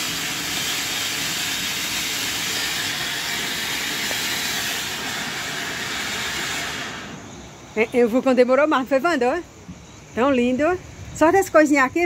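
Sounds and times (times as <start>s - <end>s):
firework fountain hissing: 0.0s - 9.4s.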